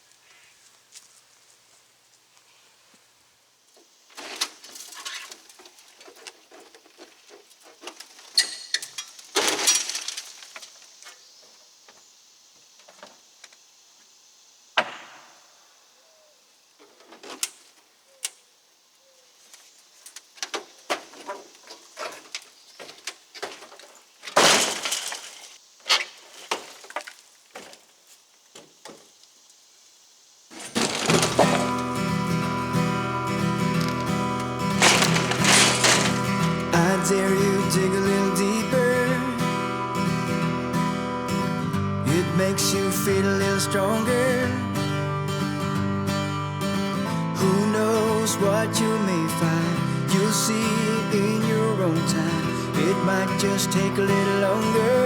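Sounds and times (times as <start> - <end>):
debris crashing and clinking: 8.8 - 10.8, 23.4 - 25.6, 30.5 - 38.0.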